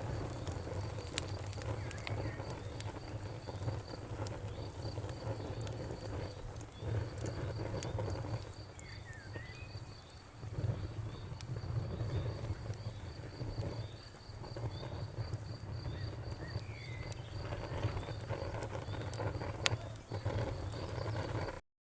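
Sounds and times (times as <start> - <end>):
cricket chirping: 0.0 - 21.5
campfire crackling and popping: 0.0 - 21.6
bird calls: 8.7 - 10.1, 15.8 - 21.0.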